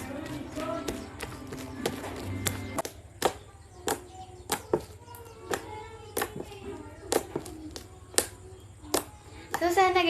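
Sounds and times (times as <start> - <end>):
faint background music: 0.0 - 10.0.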